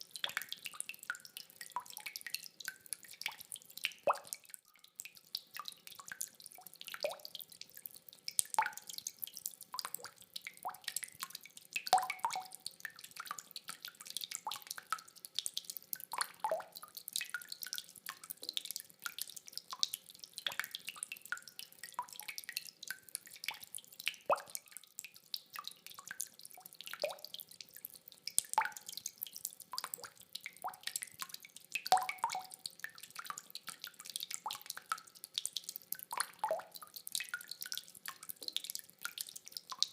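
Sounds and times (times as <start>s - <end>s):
rainwater dripping plinks: 0.0s - 39.9s.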